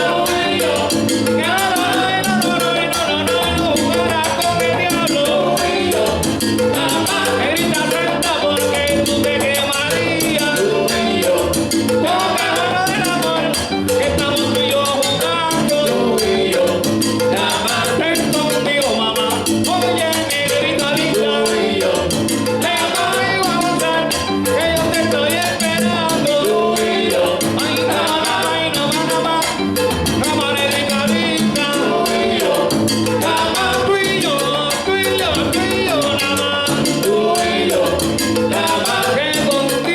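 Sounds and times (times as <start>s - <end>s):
salsa band playing: 0.0s - 39.9s
person singing: 30.2s - 39.9s.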